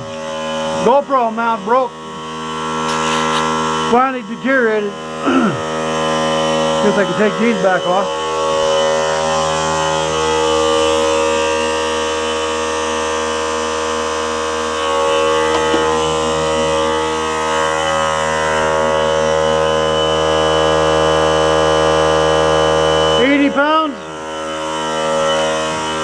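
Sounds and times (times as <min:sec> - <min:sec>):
electric air compressor humming: 0:00.0 - 0:26.0.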